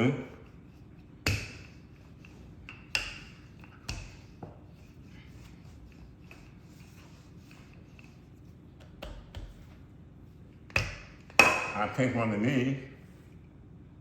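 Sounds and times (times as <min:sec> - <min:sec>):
faint room hum: 0:00.0 - 0:14.0
utensils knocking on countertop: 0:10.7 - 0:11.8.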